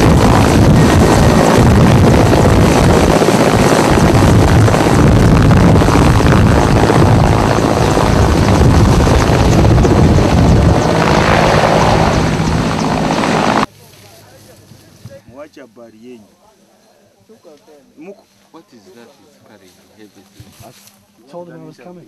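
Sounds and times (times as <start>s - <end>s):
loud engine noise: 0.0s - 13.7s
rushing wind: 0.0s - 13.7s.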